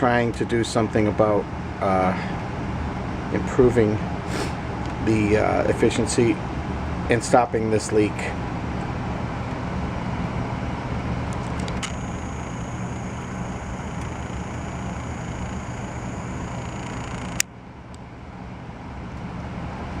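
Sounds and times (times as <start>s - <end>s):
gas furnace air rushing: 3.3s - 17.4s.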